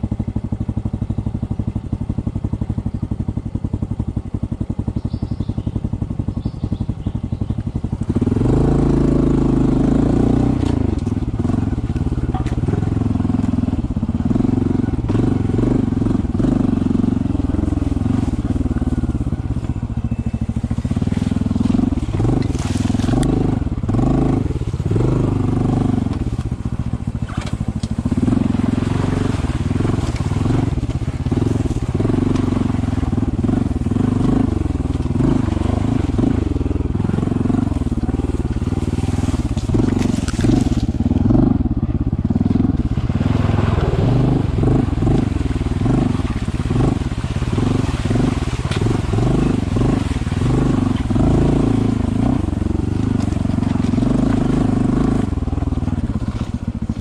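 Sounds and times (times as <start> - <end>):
motorcycle engine: 0.0 - 57.0.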